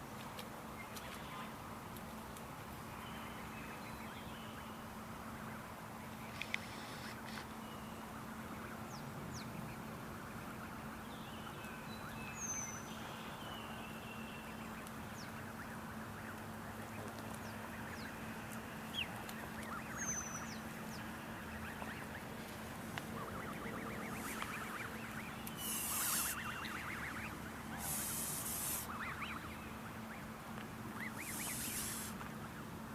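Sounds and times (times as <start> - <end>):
steady low hum: 0.0 - 32.9
small birds chirping: 0.7 - 32.8
bird rattling call: 23.9 - 29.2, 31.0 - 32.2.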